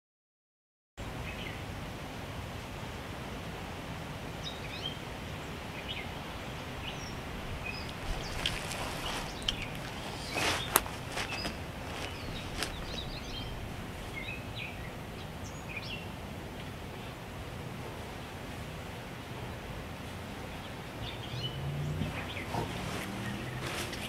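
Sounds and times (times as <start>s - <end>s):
steady background hiss: 1.0s - 24.0s
small birds chirping: 4.4s - 16.2s, 20.4s - 24.0s
rustling: 7.5s - 14.2s, 22.0s - 24.0s.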